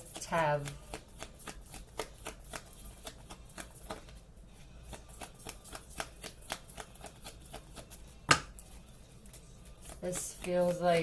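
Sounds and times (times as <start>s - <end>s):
cards being shuffled: 0.6s - 7.6s.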